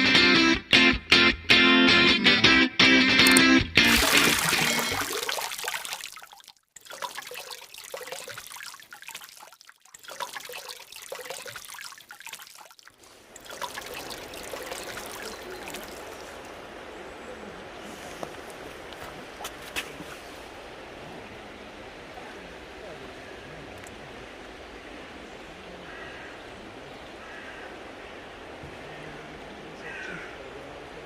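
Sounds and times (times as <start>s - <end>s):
guitar music: 0.0s - 5.0s
river flowing over stones: 3.8s - 31.0s.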